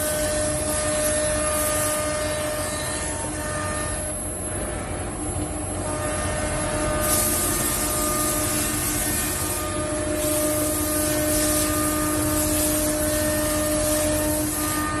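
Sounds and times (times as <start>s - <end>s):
cutting hiss: 6.9s - 15.0s.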